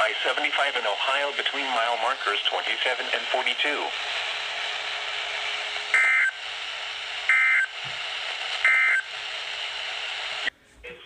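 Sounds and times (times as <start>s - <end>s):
radio reception hiss: 0.0s - 11.0s
buzzy digital tone bursts: 5.4s - 6.4s, 7.2s - 7.8s, 8.6s - 9.1s.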